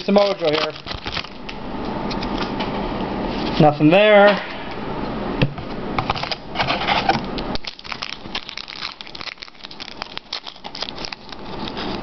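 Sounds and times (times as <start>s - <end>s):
wrapper crinkling and tearing: 0.0s - 1.4s, 7.5s - 12.0s
cards being handled: 0.0s - 1.6s, 7.6s - 12.0s.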